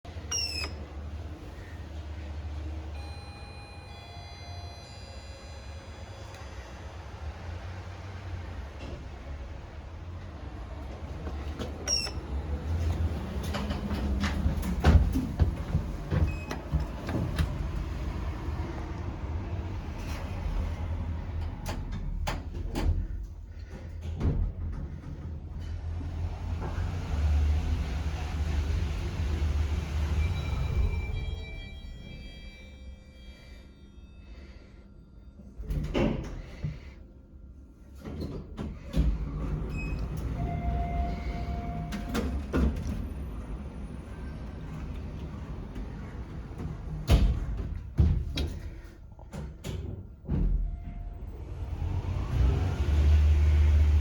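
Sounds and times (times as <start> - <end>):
lift humming: 0.1 - 23.7, 39.2 - 48.9
held tone: 2.9 - 6.5
lift clicks and clunks: 10.2 - 18.2, 37.9 - 43.2, 44.6 - 51.1.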